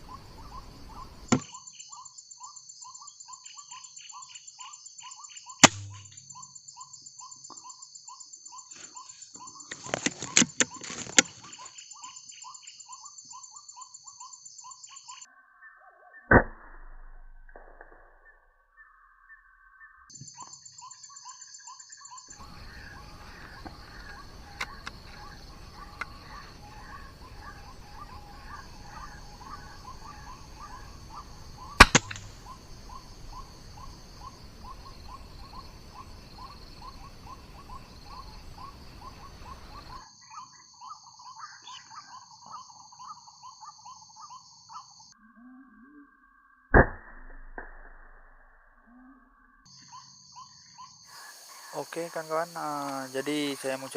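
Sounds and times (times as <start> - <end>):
waterhen calls: 0.0 - 1.4, 22.4 - 40.0
air rifle crack: 5.6 - 6.2, 22.4 - 39.7.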